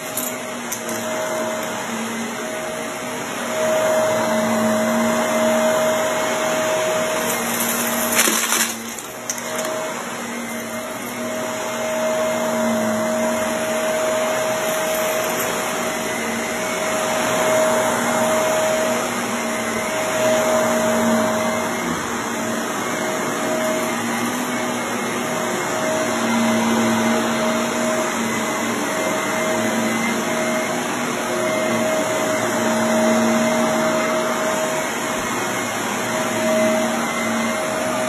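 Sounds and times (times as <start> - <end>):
vacuum cleaner running over carpet: 0.0 - 38.0.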